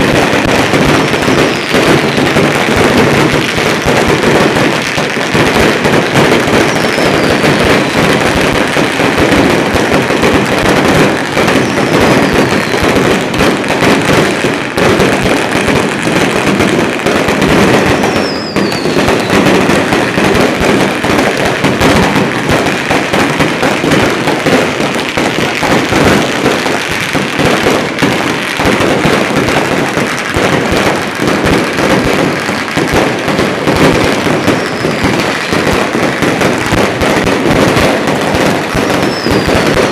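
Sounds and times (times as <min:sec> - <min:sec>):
firecrackers crackling: 0:00.0 - 0:39.9
falling whistles: 0:18.2 - 0:19.0.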